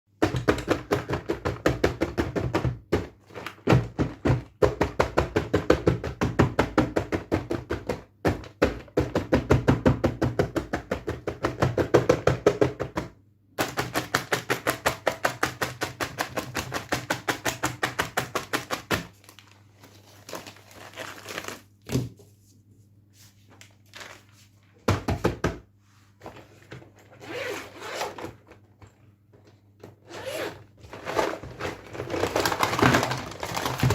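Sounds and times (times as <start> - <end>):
rapid tapping on toy packaging: 0.1 - 21.6, 31.1 - 33.9
packaging crinkling: 19.1 - 21.8, 23.6 - 24.4, 31.0 - 33.9.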